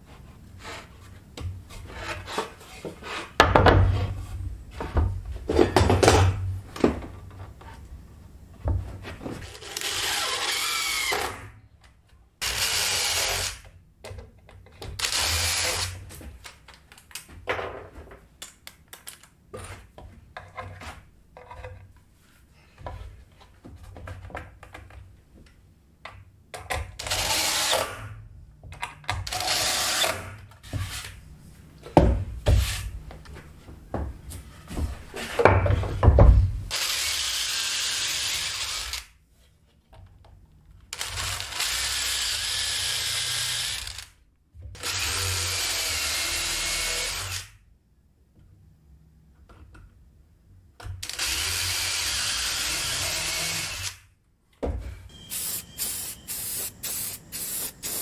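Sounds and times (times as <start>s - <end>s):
power drill running: 9.6s - 11.4s, 15.0s - 15.9s, 36.7s - 39.0s, 44.8s - 47.4s, 51.0s - 54.0s, 55.1s - 58.0s
wood knocking and clattering: 34.8s - 36.6s.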